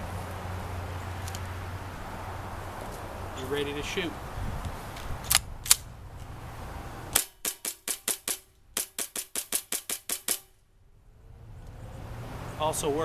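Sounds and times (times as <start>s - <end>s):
airsoft gun shots: 7.1s - 10.6s.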